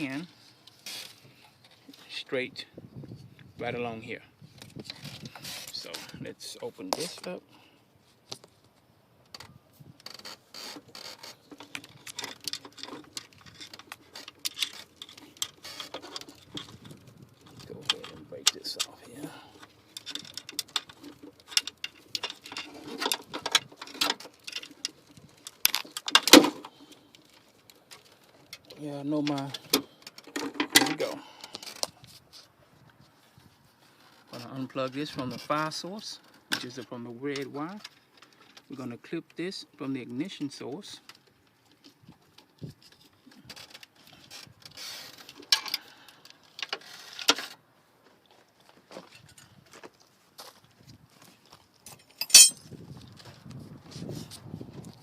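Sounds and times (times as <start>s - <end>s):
wiring parts clicking and snapping: 9.3s - 19.0s, 19.6s - 32.0s.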